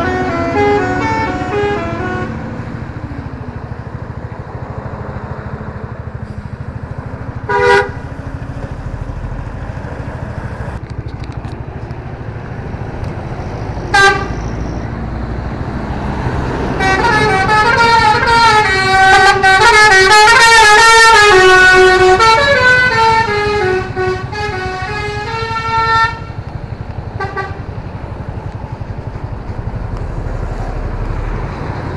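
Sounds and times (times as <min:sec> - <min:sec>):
bus musical horn: 0:00.0 - 0:02.7, 0:07.4 - 0:08.1, 0:13.9 - 0:14.8, 0:16.5 - 0:26.5, 0:27.1 - 0:27.8
bus engine rumble: 0:00.0 - 0:31.9.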